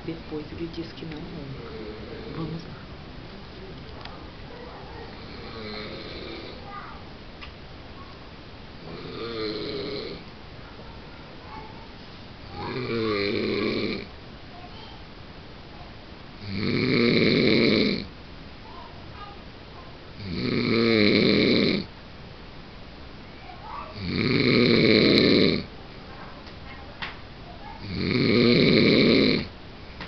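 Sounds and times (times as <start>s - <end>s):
man snoring: 5.3s - 6.6s, 8.9s - 10.2s, 12.6s - 14.1s, 16.4s - 18.1s, 20.2s - 21.9s, 24.0s - 25.7s, 27.8s - 29.5s.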